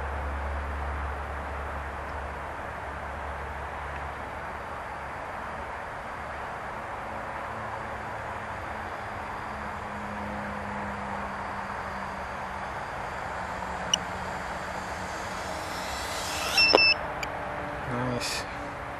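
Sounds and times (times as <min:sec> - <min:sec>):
rising whine: 0:09.6 - 0:17.8
steady hiss: 0:11.4 - 0:17.3
high-pitched electronic beep: 0:12.2 - 0:17.3
sharp click: 0:13.8 - 0:17.3.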